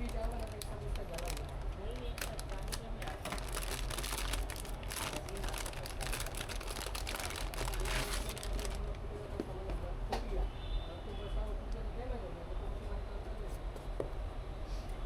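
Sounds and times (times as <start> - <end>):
rustling and crinkling: 0.0 - 9.6.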